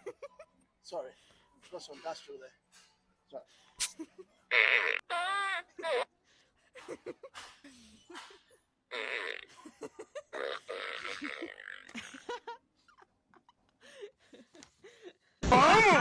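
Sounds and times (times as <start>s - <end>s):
fart noises: 3.8s - 5.1s, 8.9s - 9.5s, 10.4s - 12.2s.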